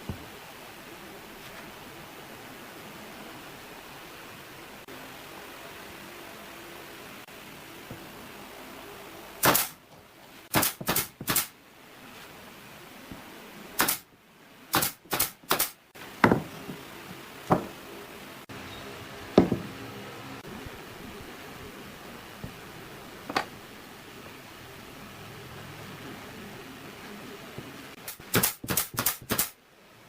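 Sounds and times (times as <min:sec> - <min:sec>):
hand tool knocking on wood: 0:16.2 - 0:16.8, 0:19.4 - 0:19.7.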